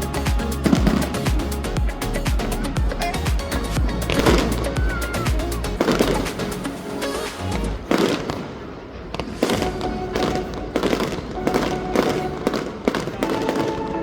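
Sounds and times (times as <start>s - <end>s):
music playing: 0.0s - 8.5s, 9.4s - 14.0s
fireworks bangs and crackles: 4.1s - 14.0s.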